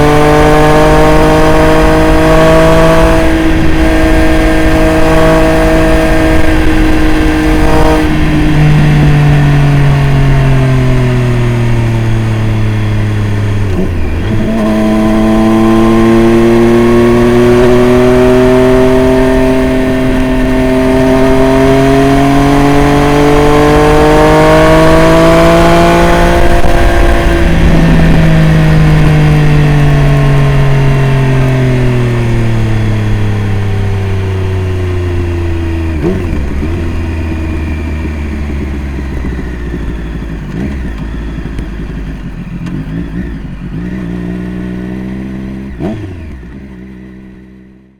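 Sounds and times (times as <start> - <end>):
motorcycle engine running: 0.0 - 47.9.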